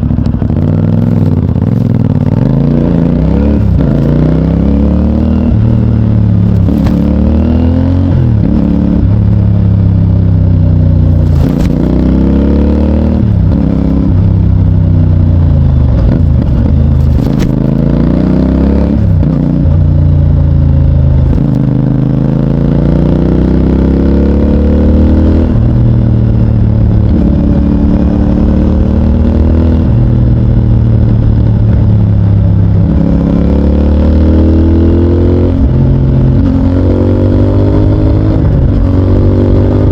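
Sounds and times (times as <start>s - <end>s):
motorcycle engine accelerating: 0.0s - 39.9s.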